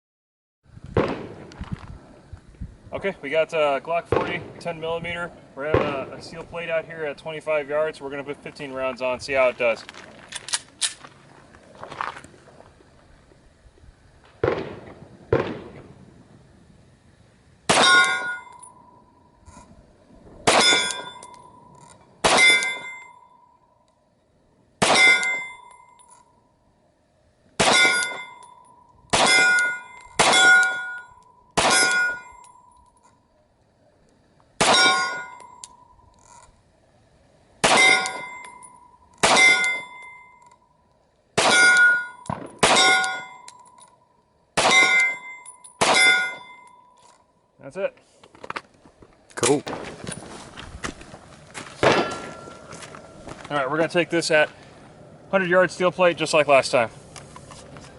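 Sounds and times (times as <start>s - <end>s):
pistol shots: 1.0s - 1.6s, 4.1s - 4.8s, 5.7s - 6.2s, 14.4s - 15.9s, 17.7s - 18.4s, 20.4s - 21.2s, 22.2s - 23.0s, 24.8s - 25.5s, 27.6s - 28.3s, 29.1s - 31.0s, 31.6s - 32.3s, 34.6s - 35.3s, 37.6s - 38.4s, 39.2s - 39.9s, 41.4s - 43.3s, 44.6s - 45.2s, 45.8s - 46.5s, 51.8s - 52.5s
steel target plate ringing: 17.7s - 19.2s, 20.5s - 23.8s, 24.8s - 26.4s, 27.6s - 33.1s, 34.6s - 36.2s, 37.6s - 40.8s, 41.4s - 47.0s, 51.8s - 53.2s.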